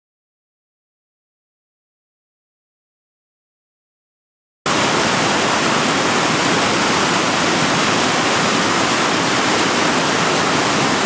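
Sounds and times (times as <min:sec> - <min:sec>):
whitewater rapids rushing: 0:04.7 - 0:11.0.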